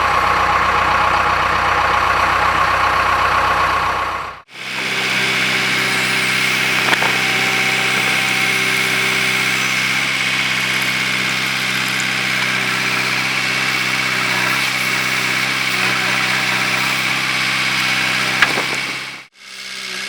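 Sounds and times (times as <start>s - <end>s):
diesel engine running: 0.0s - 20.0s
steady high whine: 4.5s - 19.3s.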